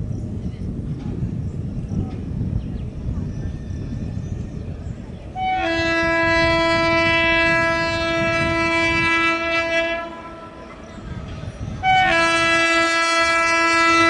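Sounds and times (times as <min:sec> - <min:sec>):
locomotive horn blast: 0:05.3 - 0:11.0, 0:11.7 - 0:14.0.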